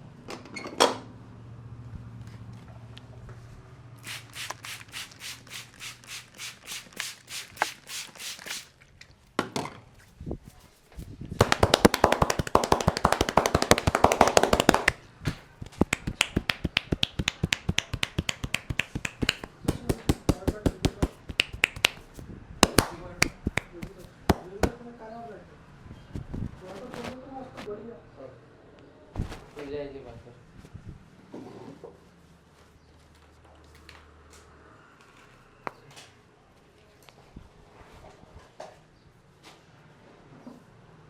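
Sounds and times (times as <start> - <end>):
hands tapping and slapping head: 4.0 - 8.6, 11.4 - 15.0, 15.6 - 24.8.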